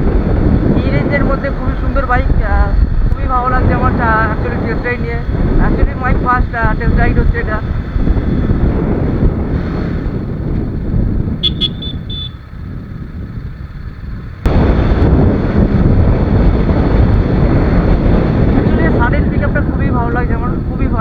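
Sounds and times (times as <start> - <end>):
motorcycle engine at speed: 0.0 - 21.0
wind rush: 0.0 - 21.0
short high beeps: 11.4 - 12.4.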